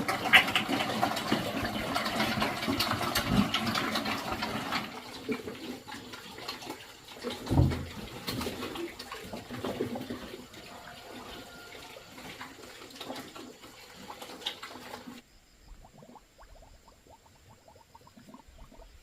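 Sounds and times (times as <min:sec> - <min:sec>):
small knocks and clatters: 0:00.0 - 0:10.3
water splashing and running: 0:00.0 - 0:15.2.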